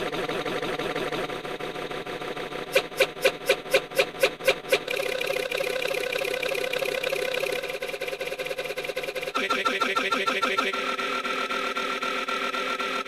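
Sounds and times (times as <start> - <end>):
steady buzzing: 2.7 - 13.0.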